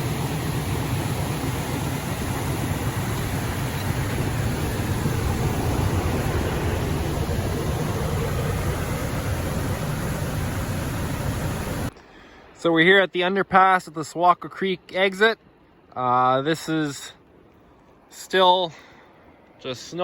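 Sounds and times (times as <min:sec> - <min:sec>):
car engine rumble: 0:00.0 - 0:12.0
road and tyre noise: 0:00.0 - 0:12.0.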